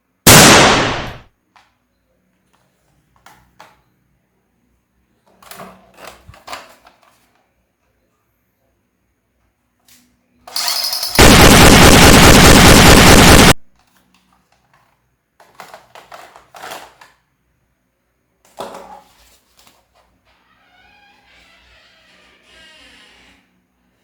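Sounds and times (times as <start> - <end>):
machine-gun burst: 0.3 - 1.2, 10.6 - 13.6.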